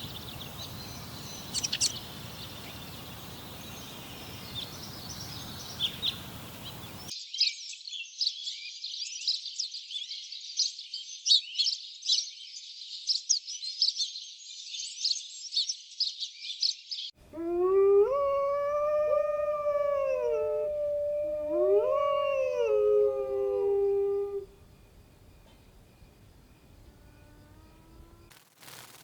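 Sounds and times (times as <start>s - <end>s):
dog howling: 17.3s - 24.6s.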